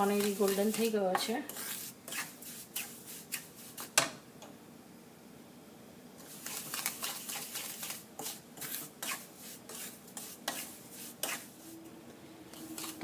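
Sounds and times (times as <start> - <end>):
spatula scraping a pan: 0.0 - 4.0, 6.2 - 11.8, 12.5 - 13.0.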